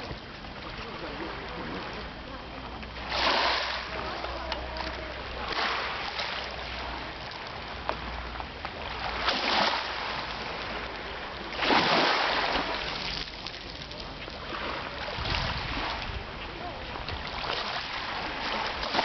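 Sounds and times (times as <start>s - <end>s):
sea waves washing on shore: 0.0s - 19.0s.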